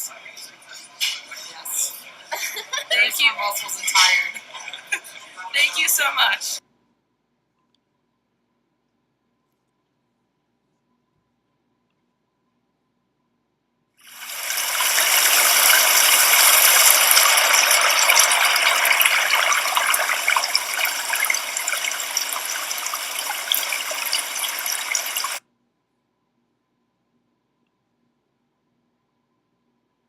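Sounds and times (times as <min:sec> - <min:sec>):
loud hiss with crackles: 0:14.0 - 0:25.4.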